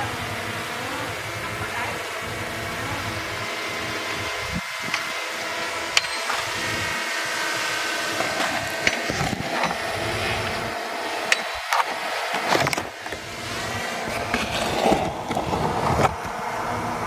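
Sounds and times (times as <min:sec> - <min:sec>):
heavy machinery engine running: 0:00.0 - 0:17.0
stone and soil clattering: 0:04.7 - 0:05.3, 0:06.0 - 0:06.8, 0:08.1 - 0:10.7, 0:11.3 - 0:13.3, 0:14.0 - 0:16.3.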